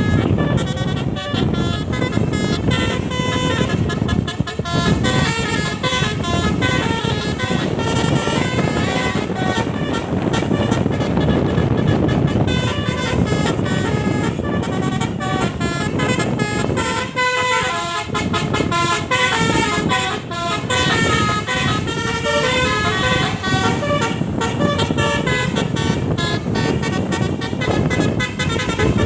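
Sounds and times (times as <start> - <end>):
musical air horn melody: 0.0 - 29.0.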